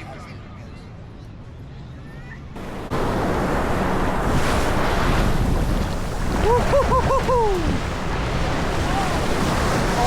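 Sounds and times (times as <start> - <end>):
rushing water: 2.6 - 10.0
wind buffeting microphone: 2.6 - 10.0.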